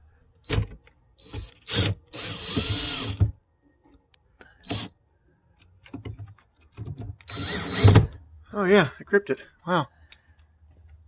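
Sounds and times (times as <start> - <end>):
cordless drill driving screw: 1.2 - 3.2, 7.3 - 8.1.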